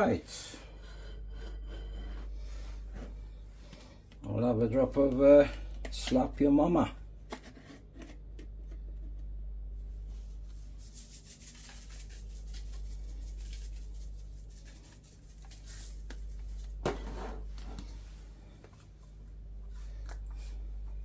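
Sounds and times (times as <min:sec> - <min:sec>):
steady low hum: 0:00.0 - 0:21.0
scrape: 0:00.3 - 0:03.6, 0:10.0 - 0:18.3
hands rubbing and squishing raw chicken: 0:10.1 - 0:16.8.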